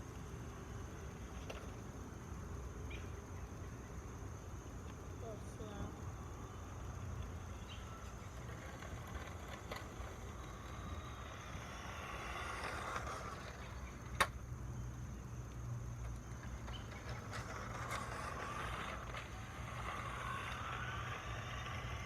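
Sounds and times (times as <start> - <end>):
toy car motor hiss: 9.0 - 13.9, 17.6 - 22.0.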